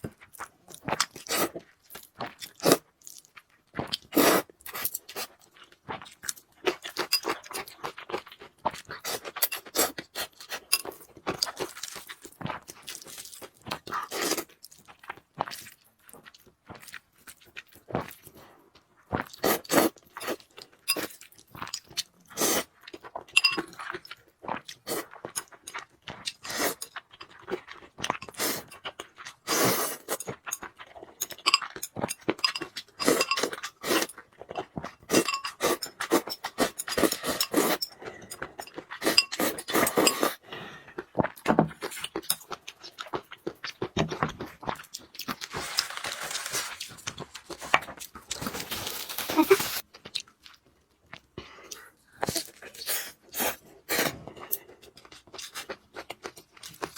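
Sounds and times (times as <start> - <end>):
chewing noodles: 0.0 - 56.9
utensil clinking: 23.4 - 23.7.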